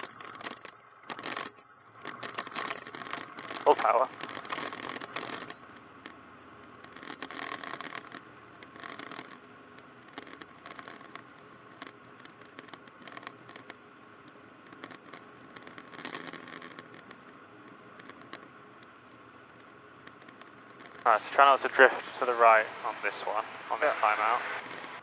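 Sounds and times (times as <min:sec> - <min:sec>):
clicks and crackles: 0:00.0 - 0:25.0
headset intercom hiss: 0:03.6 - 0:04.5, 0:20.8 - 0:25.0.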